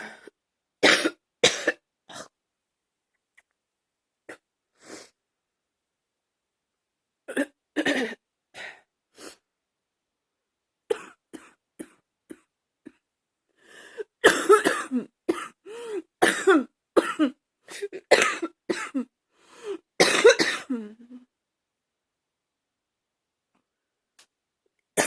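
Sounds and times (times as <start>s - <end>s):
woman coughing: 0.8s - 2.3s, 7.3s - 8.2s, 14.2s - 15.6s, 16.2s - 19.1s, 20.0s - 21.0s.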